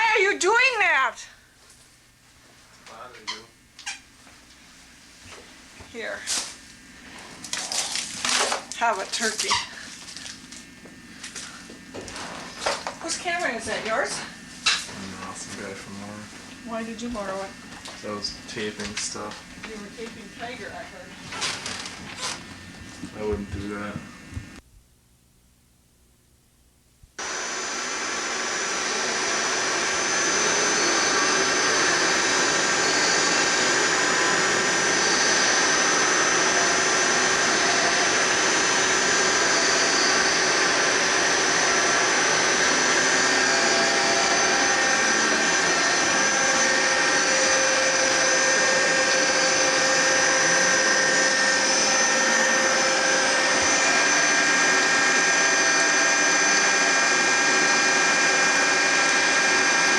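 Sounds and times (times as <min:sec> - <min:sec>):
loud mechanical whir: 0:27.2 - 0:59.9.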